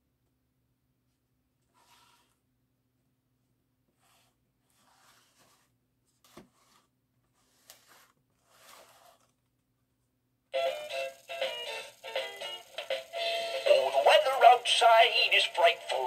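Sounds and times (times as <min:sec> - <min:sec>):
faint steady hum: 0:09.4 - 0:16.0
toy figure music: 0:10.6 - 0:16.0.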